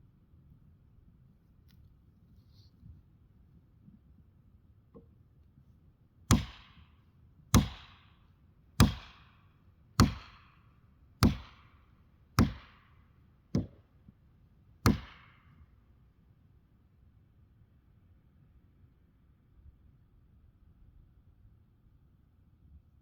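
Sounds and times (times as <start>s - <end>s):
axe chopping tree trunk: 6.3s - 6.9s, 7.5s - 8.1s, 8.8s - 9.4s, 10.0s - 10.6s, 11.2s - 11.8s, 12.4s - 12.9s, 13.6s - 13.8s, 14.8s - 15.4s.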